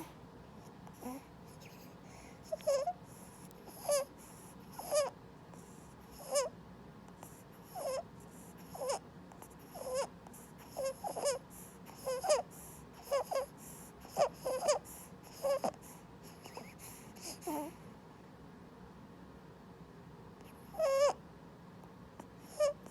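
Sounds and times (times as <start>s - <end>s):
infant squeaky breathing: 1.0s - 3.0s, 3.7s - 4.1s, 4.7s - 5.1s, 6.1s - 6.5s, 7.6s - 8.0s, 9.6s - 17.8s, 20.7s - 21.2s, 22.4s - 22.9s.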